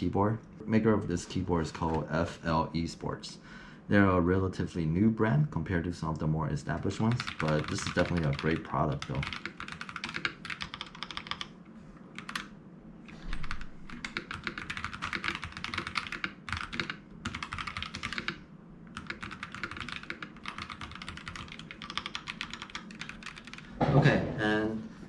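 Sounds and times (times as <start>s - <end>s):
mechanical keyboard typing: 1.6s - 2.1s, 6.8s - 11.5s, 12.2s - 12.5s, 13.3s - 23.7s.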